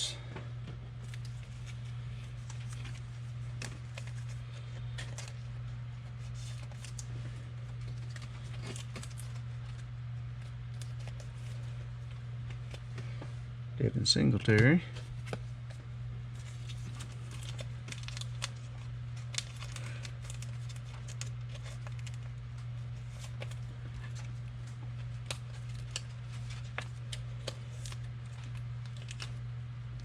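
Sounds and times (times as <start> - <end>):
low steady hum: 0.0 - 30.0
trading cards clicking and rustling: 1.0 - 5.5, 6.2 - 9.8, 14.0 - 15.8, 16.4 - 29.4.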